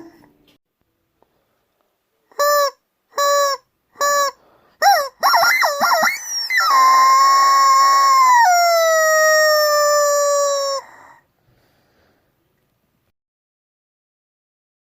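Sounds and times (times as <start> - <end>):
rubber chicken squawking: 2.4 - 10.9.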